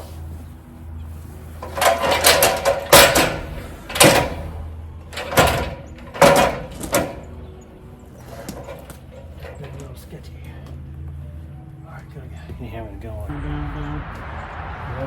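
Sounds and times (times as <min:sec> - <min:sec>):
sharp clattering knocks: 0:01.6 - 0:07.4
low steady hum: 0:13.2 - 0:15.0.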